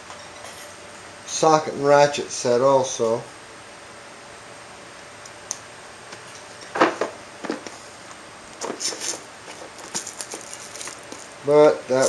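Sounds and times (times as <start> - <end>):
hand tools clattering and rustling: 8.6 - 11.4.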